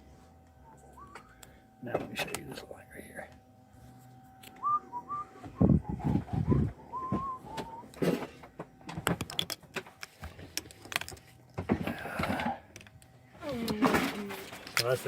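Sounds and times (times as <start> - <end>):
clicks and knocks of handling: 7.6 - 13.1, 13.7 - 15.0.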